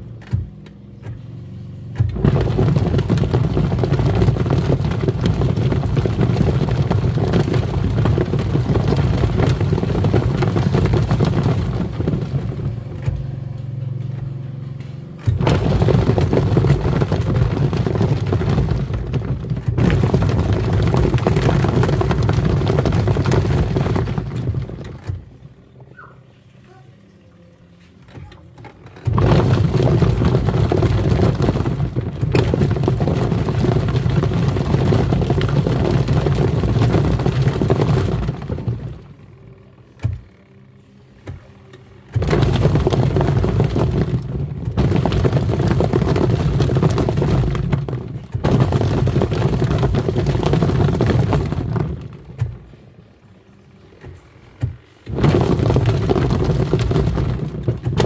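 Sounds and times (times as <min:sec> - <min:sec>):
washing machine motor hum: 0:00.0 - 0:58.0
toys knocking in tub: 0:02.0 - 0:13.5, 0:15.2 - 0:25.3, 0:29.0 - 0:39.1, 0:42.1 - 0:52.7, 0:54.0 - 0:58.0.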